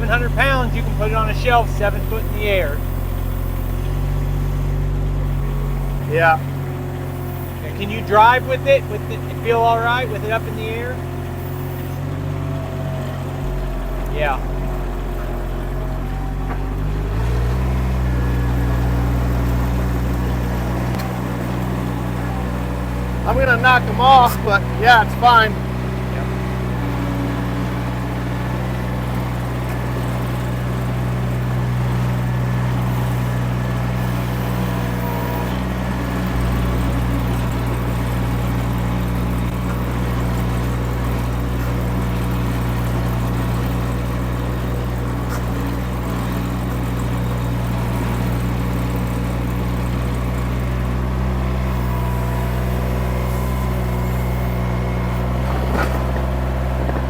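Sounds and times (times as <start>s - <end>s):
skid steer engine running: 0.0s - 57.0s.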